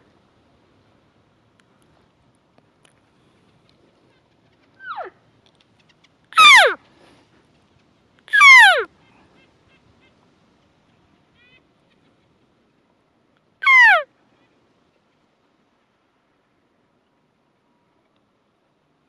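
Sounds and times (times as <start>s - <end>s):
elk mewing calls: 4.8s - 5.1s, 6.4s - 6.8s, 8.3s - 8.9s, 13.6s - 14.0s.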